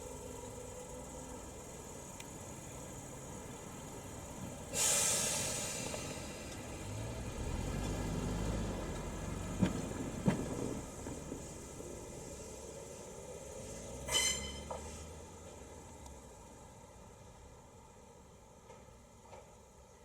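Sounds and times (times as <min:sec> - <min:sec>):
train moving hum and rumble: 0:00.0 - 0:07.4, 0:08.4 - 0:20.0
train brakes air hiss: 0:04.7 - 0:06.7, 0:12.4 - 0:15.2.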